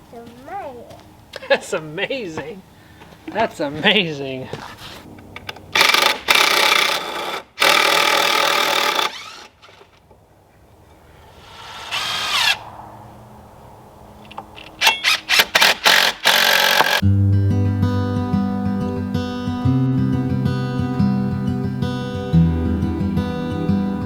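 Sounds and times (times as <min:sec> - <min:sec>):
power drill running: 0:05.8 - 0:09.5, 0:11.5 - 0:12.6, 0:15.0 - 0:17.0
drill clicks: 0:14.3 - 0:17.0.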